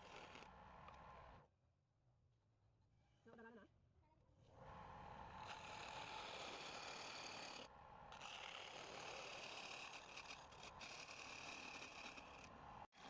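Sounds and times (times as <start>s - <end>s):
wood lathe tool scraping wood: 5.6s - 7.6s, 8.2s - 12.5s.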